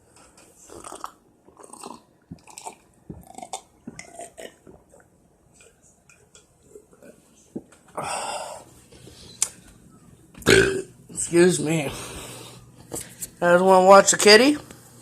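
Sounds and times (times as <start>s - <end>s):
person chewing and crunching: 0.6s - 7.2s.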